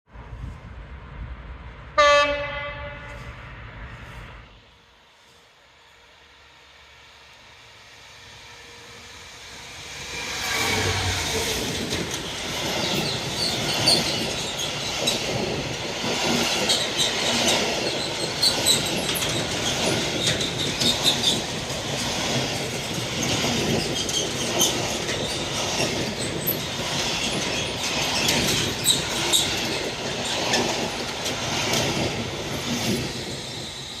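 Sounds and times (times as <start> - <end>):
diesel locomotive passing: 0.1 - 34.0
wheels clattering on rails: 10.2 - 33.7.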